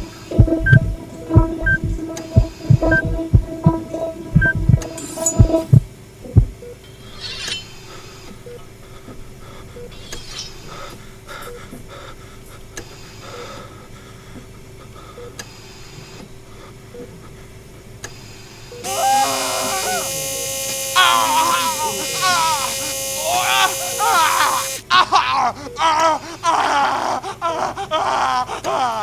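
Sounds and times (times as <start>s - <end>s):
steady electronic hum: 0.0s - 6.5s, 18.8s - 24.8s
heartbeat thumps: 0.0s - 6.6s
hissing swells: 18.8s - 24.8s.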